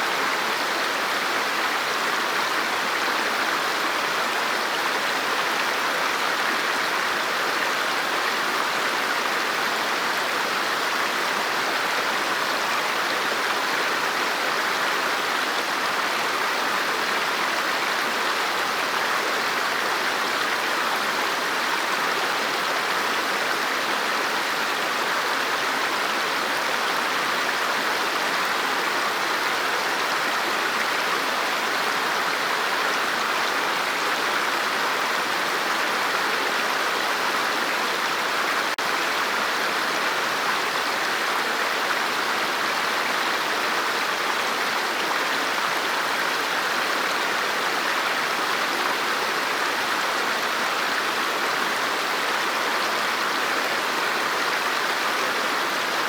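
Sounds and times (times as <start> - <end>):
river flowing over rocks: 0.0 - 56.0.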